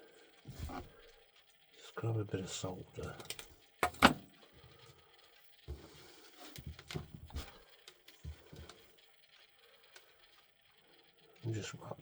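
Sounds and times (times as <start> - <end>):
soft handling knocks and clicks: 0.5 - 1.1, 3.0 - 5.0, 5.6 - 9.0.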